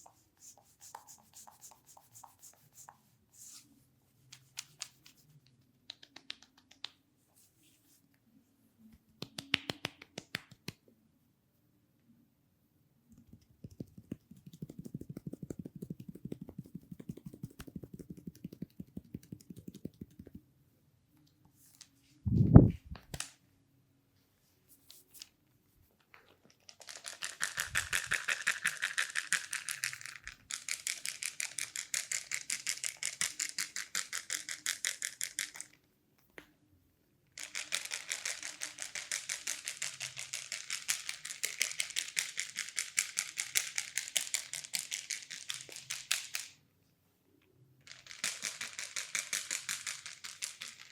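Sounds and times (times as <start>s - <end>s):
soft rapid patting: 13.1s - 20.5s.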